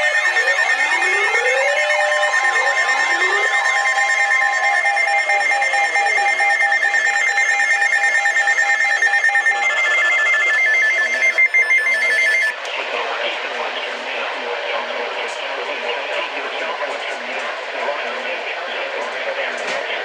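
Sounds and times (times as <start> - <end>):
alert tone: 0.0 - 12.6
fast repeating electronic beeps: 0.0 - 12.6.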